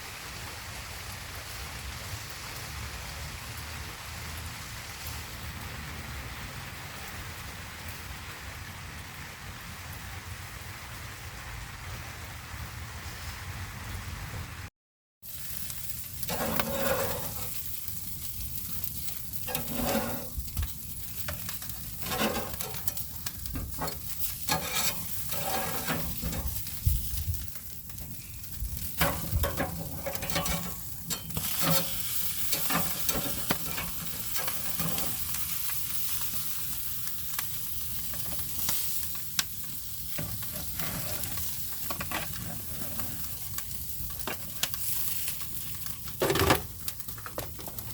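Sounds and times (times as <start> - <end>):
food sizzling in frying: 15.2 - 47.9
cooking utensil clicks and scrapes: 16.0 - 47.9.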